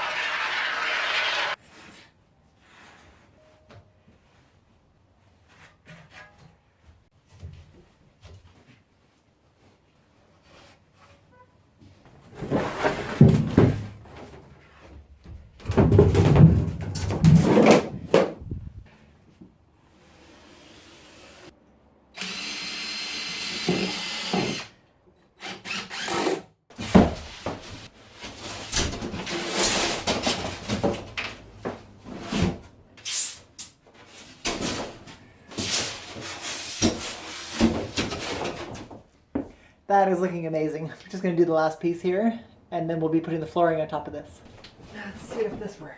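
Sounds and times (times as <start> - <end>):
power drill driving screws: 22.2 - 24.7, 25.4 - 26.5.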